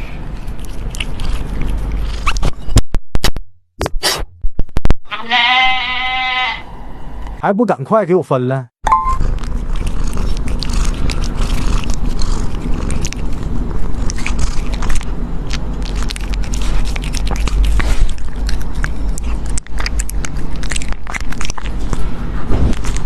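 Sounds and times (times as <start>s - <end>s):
animal chewing and crunching food: 0.0s - 2.7s, 9.0s - 23.0s.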